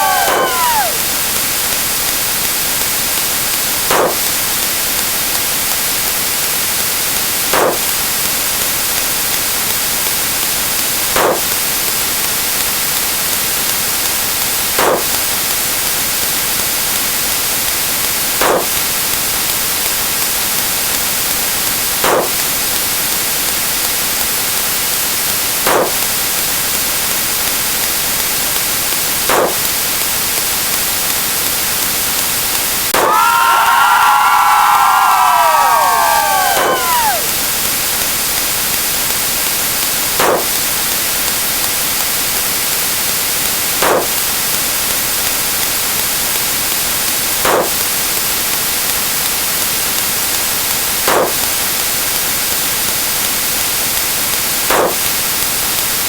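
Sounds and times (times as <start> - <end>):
short noise bursts: 0.0 - 5.0, 14.6 - 15.8, 32.2 - 44.9, 47.1 - 48.4, 50.4 - 52.2
static white noise hiss: 0.0 - 56.0.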